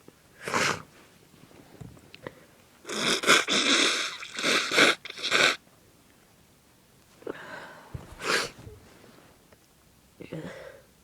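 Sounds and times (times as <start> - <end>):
person blowing nose: 0.4 - 0.9, 2.9 - 5.6, 8.1 - 8.7.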